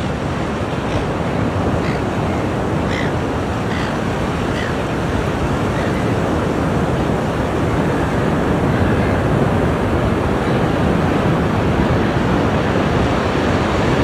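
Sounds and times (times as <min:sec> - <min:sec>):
ocean waves breaking: 0:00.0 - 0:14.0.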